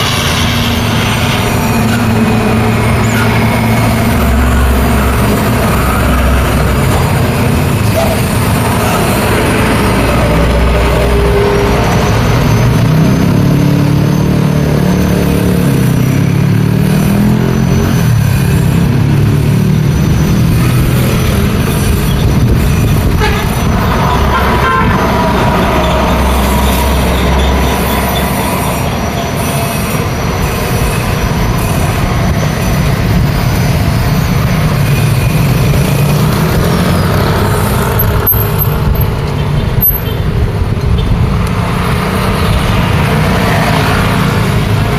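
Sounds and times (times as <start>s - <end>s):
heavy diesel engine: 0.0s - 44.9s
road traffic passing: 0.0s - 44.9s
vehicle horn: 22.6s - 30.0s.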